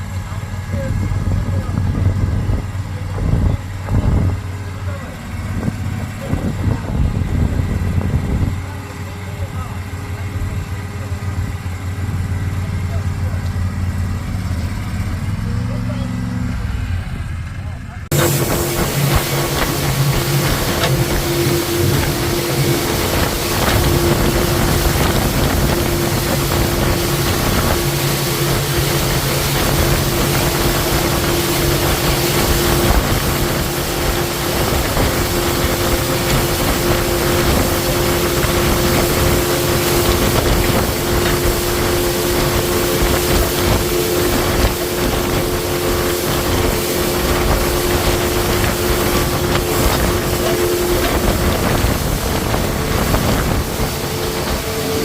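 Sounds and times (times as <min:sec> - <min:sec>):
motorboat engine running: 0:00.0 - 0:55.0
wind on microphone: 0:00.7 - 0:04.5, 0:05.4 - 0:08.7, 0:18.1 - 0:55.0.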